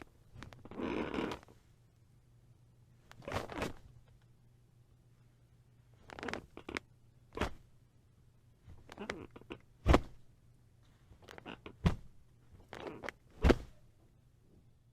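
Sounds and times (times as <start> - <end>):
bed mattress creaking: 0.4 - 1.5, 3.1 - 3.8, 6.0 - 6.8, 8.8 - 10.2, 11.2 - 13.8.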